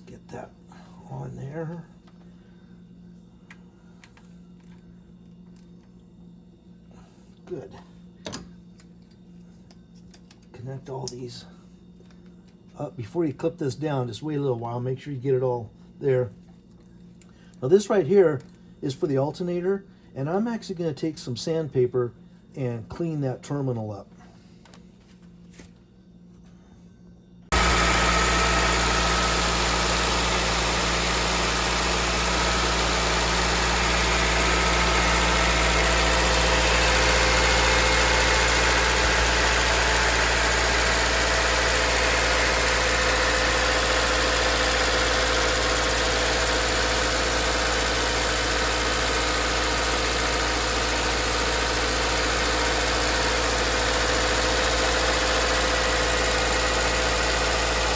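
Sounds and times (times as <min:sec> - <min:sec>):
car engine idling: 0:27.5 - 0:57.9.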